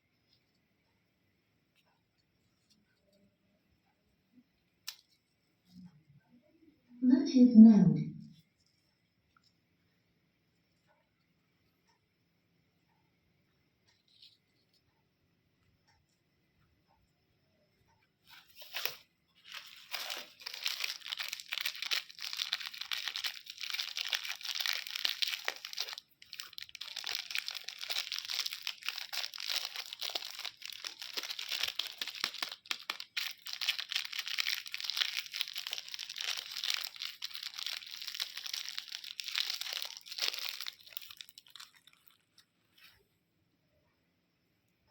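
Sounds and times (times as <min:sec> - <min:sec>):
candy wrapper crinkling: 0:18.3 - 0:42.6.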